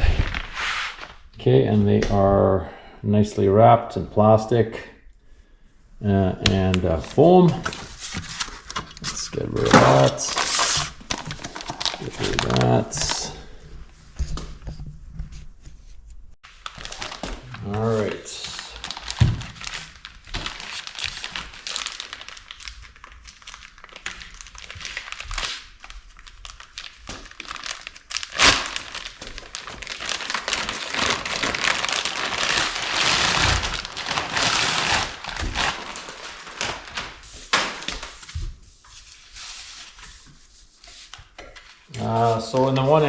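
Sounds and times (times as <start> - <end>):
plastic wrap and foam rustling: 0.0 - 1.3, 6.5 - 43.0.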